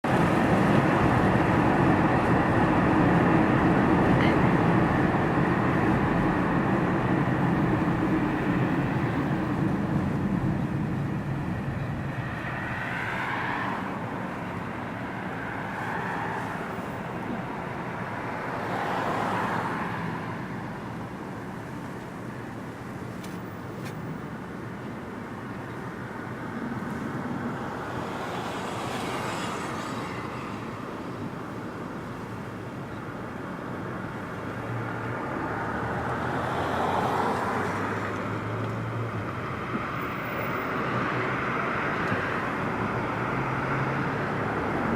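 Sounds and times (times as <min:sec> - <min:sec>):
jet engine roar: 0:00.0 - 0:21.2
passing traffic whooshes: 0:00.0 - 0:44.9.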